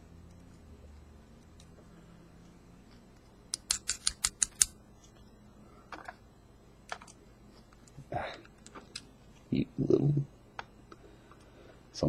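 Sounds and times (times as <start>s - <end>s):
sharp clicks of lock parts: 3.5s - 4.8s.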